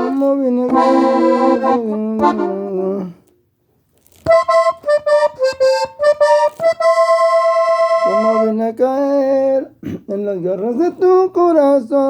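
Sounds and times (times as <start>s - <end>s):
button accordion melody: 0.0s - 3.0s, 4.3s - 8.6s.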